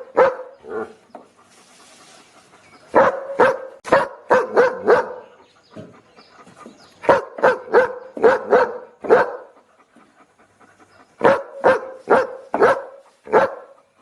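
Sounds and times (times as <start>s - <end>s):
dog barking: 0.0s - 0.6s, 2.9s - 5.3s, 7.0s - 9.6s, 11.2s - 13.8s.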